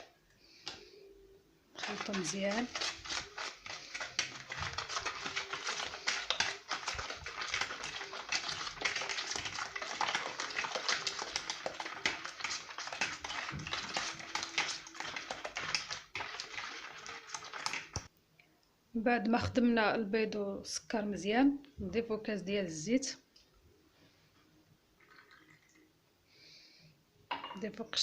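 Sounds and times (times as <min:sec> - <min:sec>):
whisk clattering against bowl: 0:01.8 - 0:18.1.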